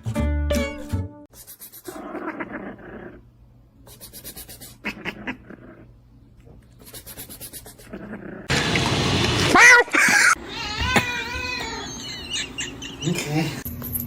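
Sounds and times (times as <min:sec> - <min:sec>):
cat rapid pulsing sounds: 0:03.9 - 0:05.1, 0:06.8 - 0:08.0.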